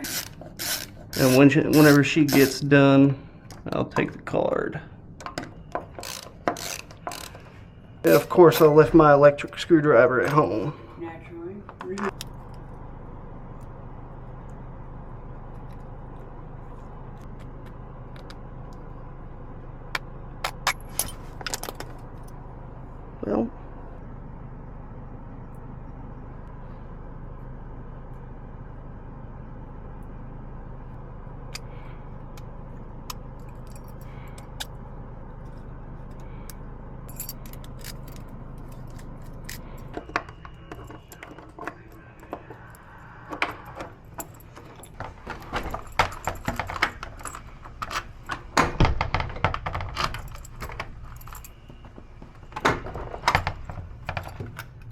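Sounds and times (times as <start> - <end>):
low hum: 0.0 - 54.9
keys clicking and jingling: 33.4 - 34.7, 37.1 - 48.6, 49.3 - 54.9.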